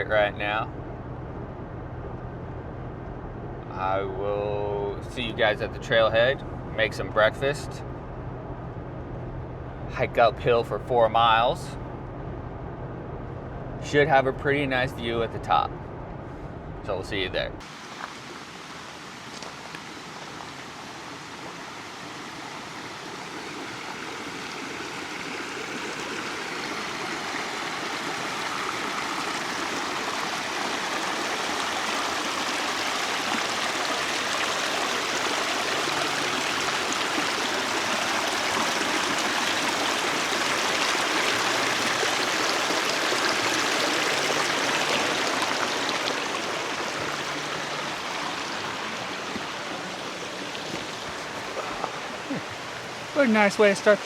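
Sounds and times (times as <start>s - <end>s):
water rushing over rocks: 17.6s - 54.0s.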